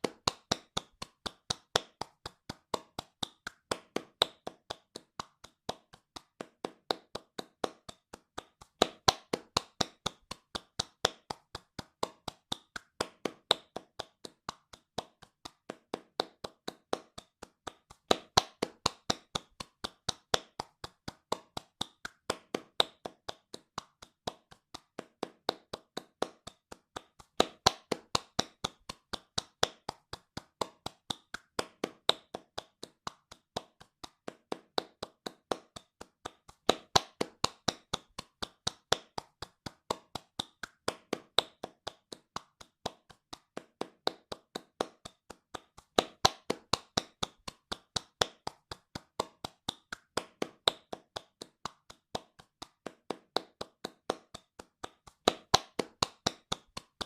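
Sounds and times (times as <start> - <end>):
hands clapping fast: 0.0 - 57.0.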